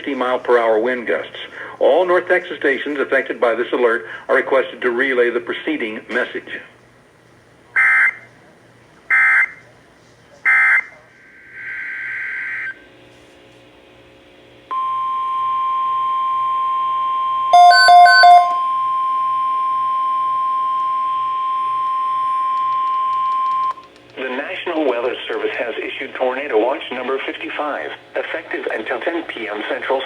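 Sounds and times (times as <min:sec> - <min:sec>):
steady warning alarm tone: 0:14.7 - 0:23.8
short loud beeps: 0:17.5 - 0:18.8.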